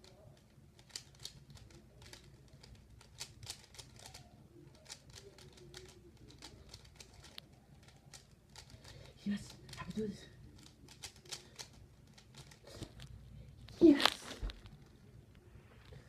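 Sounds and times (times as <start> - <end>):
plastic puzzle cube clicking: 0.0 - 9.9, 10.6 - 13.1.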